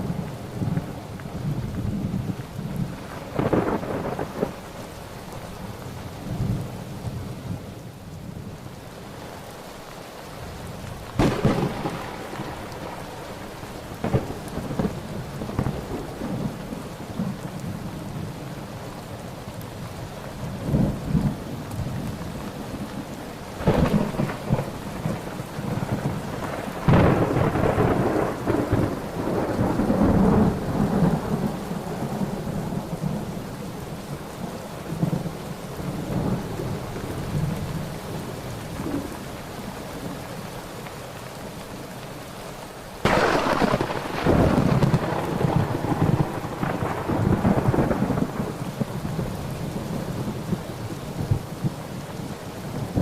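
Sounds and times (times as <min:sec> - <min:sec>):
thunder claps and rumbles: 0:00.0 - 0:04.8, 0:10.9 - 0:18.4, 0:20.5 - 0:33.8, 0:43.0 - 0:53.0
steady rain: 0:00.0 - 0:53.0.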